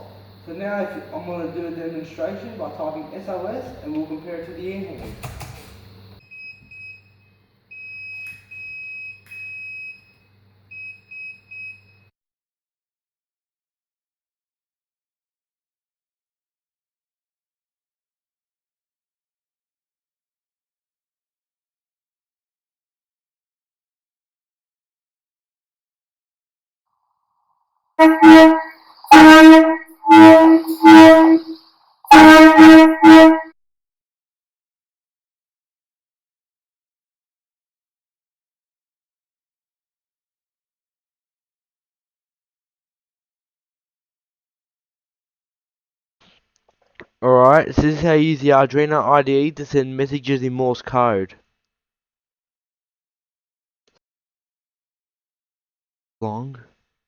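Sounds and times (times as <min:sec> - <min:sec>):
truck air horn blasts: 0:28.0 - 0:33.5.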